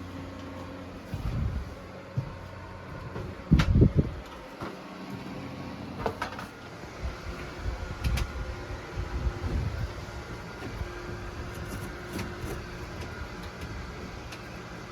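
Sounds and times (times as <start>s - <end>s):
low hum: 0.0s - 4.5s.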